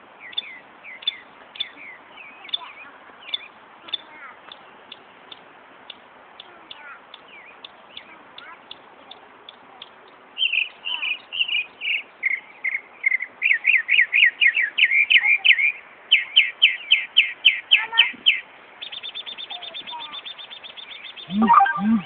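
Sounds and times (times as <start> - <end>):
bird singing whistled phrases: 10.4 - 22.0
buzzy bird trill: 21.0 - 22.0.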